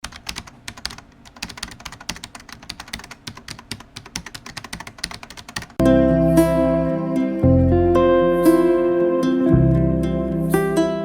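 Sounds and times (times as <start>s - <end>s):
rapid irregular clicking: 0.0s - 5.8s.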